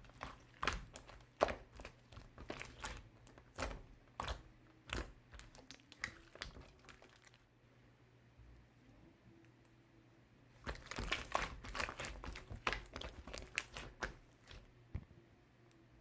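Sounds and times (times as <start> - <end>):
slime crackling and popping: 0.0 - 7.4, 10.6 - 14.7.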